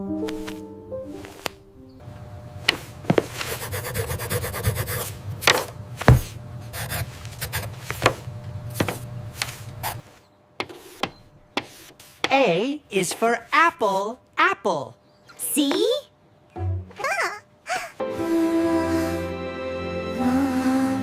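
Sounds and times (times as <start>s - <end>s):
steady low hum: 1.5s - 14.3s
chalk scraping on blackboard: 2.7s - 5.2s, 6.7s - 8.2s, 8.8s - 12.4s.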